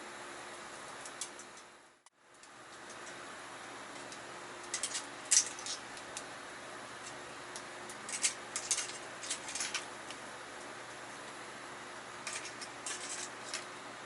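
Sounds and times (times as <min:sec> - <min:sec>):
wood fire crackles and pops: 0:03.9 - 0:11.4.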